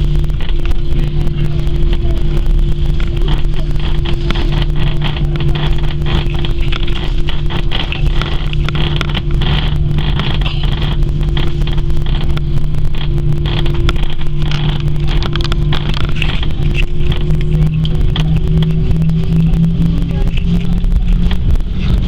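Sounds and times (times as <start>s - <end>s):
aircraft engine rumble: 0.0s - 22.0s.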